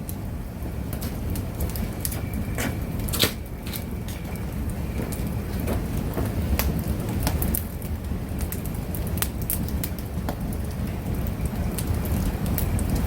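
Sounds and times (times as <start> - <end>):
fire low rumble: 0.0 - 13.0
wood fire crackling and popping: 0.0 - 13.0.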